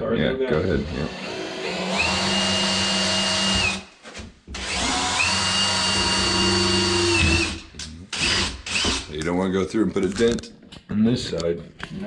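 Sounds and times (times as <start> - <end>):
power drill whining: 0.8 - 3.9, 4.5 - 9.2.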